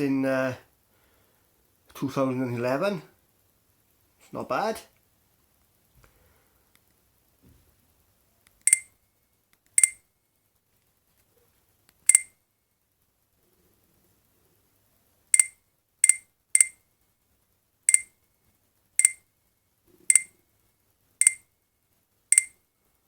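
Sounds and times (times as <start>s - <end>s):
phone key-press beeps: 8.7s - 8.9s, 12.1s - 12.3s, 15.4s - 16.8s, 17.9s - 18.1s, 19.0s - 19.2s, 20.1s - 20.3s, 21.2s - 21.4s, 22.3s - 22.6s.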